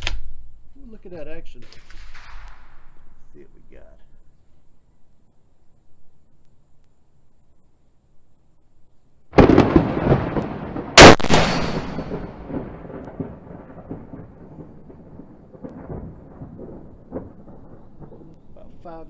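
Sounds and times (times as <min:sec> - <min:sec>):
rifle shot echoing: 0:01.6 - 0:03.3, 0:09.4 - 0:14.0
loud rumbling boom: 0:09.4 - 0:18.4.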